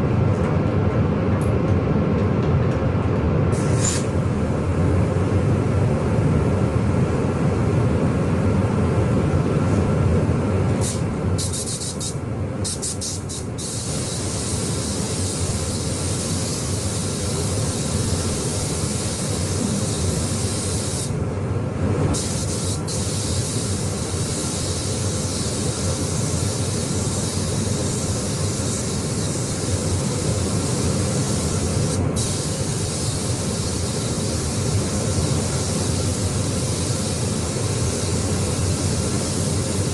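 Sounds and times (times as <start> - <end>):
paint spray gun hissing: 3.5 - 4.2, 10.8 - 21.2, 22.2 - 39.9.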